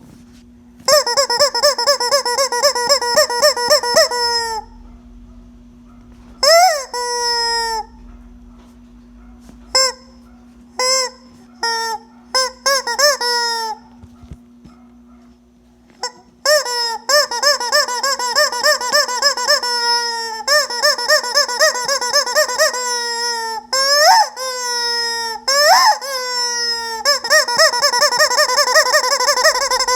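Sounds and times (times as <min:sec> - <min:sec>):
squeaky rubber chicken toy: 0:00.8 - 0:04.8, 0:06.4 - 0:08.0, 0:09.7 - 0:14.1, 0:16.0 - 0:29.9.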